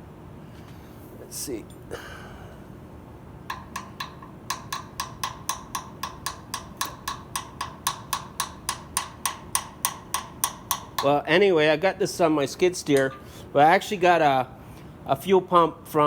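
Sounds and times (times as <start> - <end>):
rapid light ringing knocks: 3.4 - 11.3, 12.9 - 13.4.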